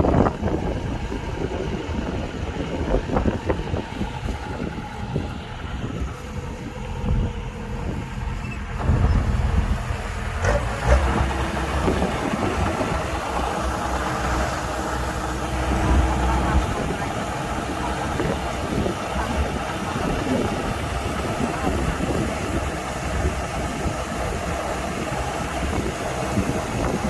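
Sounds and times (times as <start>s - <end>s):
combine harvester engine drone: 0.0s - 27.0s
machinery rattling: 0.1s - 27.0s.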